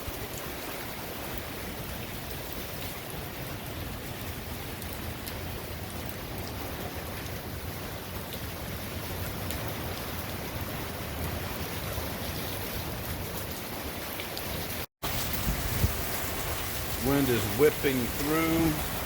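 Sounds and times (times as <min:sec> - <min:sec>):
heavy rain pouring: 0:00.0 - 0:19.0
strong gusting wind: 0:14.6 - 0:19.0.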